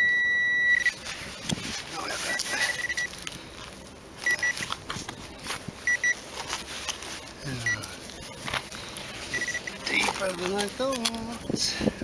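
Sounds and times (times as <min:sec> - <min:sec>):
metal detector beeping: 0:00.0 - 0:01.0, 0:02.2 - 0:03.2, 0:04.2 - 0:04.7, 0:05.8 - 0:06.2, 0:07.6 - 0:07.9, 0:09.2 - 0:11.4.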